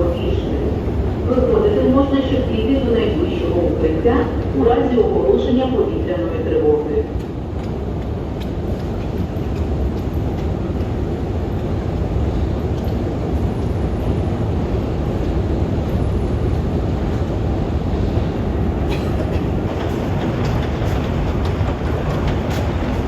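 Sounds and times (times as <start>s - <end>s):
train wheels rumbling on track: 0.0s - 23.0s.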